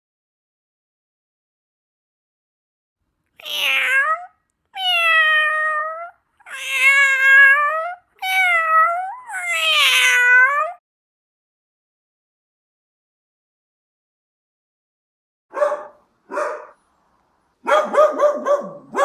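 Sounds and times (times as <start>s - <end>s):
cat meowing: 3.4s - 10.8s.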